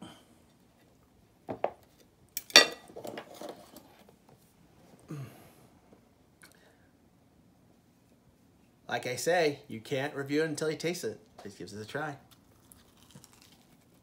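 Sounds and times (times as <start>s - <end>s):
cutlery clattering on a plate: 2.4s - 3.6s.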